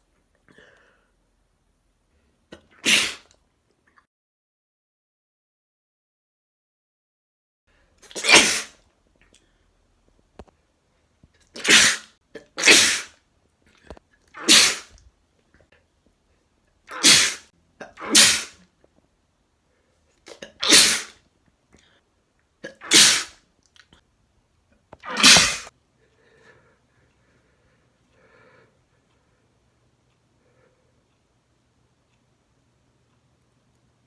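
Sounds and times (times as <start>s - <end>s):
man sneezing: 2.7s - 3.3s, 8.1s - 8.8s, 11.6s - 13.1s, 14.4s - 14.9s, 16.9s - 18.6s, 20.3s - 21.2s, 22.7s - 23.4s, 25.0s - 25.7s.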